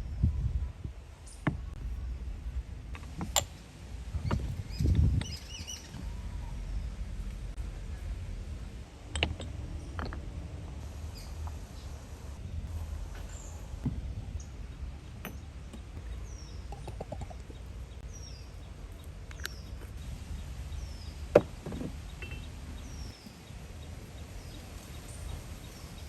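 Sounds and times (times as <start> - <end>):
bird chirping: 4.2 - 7.0, 11.0 - 26.0.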